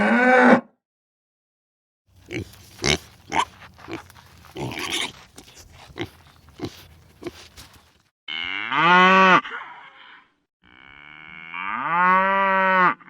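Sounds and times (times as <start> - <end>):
animal grunting: 2.2 - 8.0.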